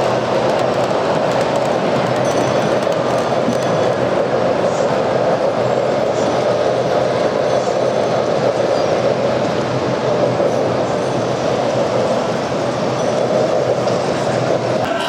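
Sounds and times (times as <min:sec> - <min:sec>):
model trains running on track: 0:00.0 - 0:15.0.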